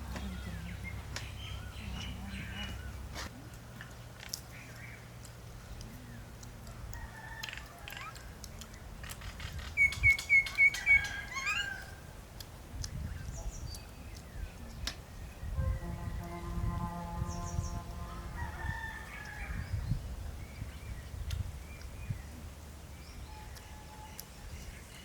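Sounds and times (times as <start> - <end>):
bird chirping: 0.0 - 6.4, 7.8 - 12.0, 17.2 - 18.1, 19.0 - 25.0.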